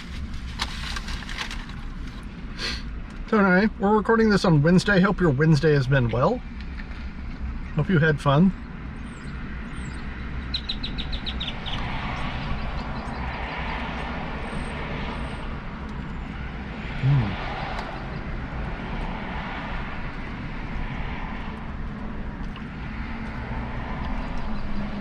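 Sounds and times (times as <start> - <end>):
road traffic rumble: 0.0 - 25.0
low voice hum: 17.0 - 17.5.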